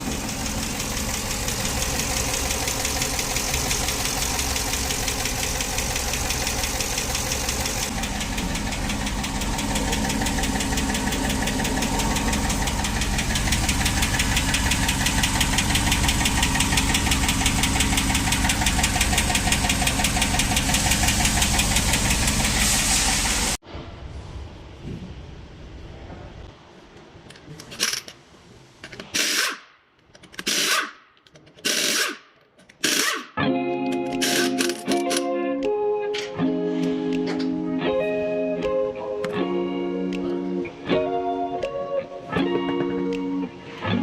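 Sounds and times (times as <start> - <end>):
engine running with ticking knock: 0.0 - 23.6.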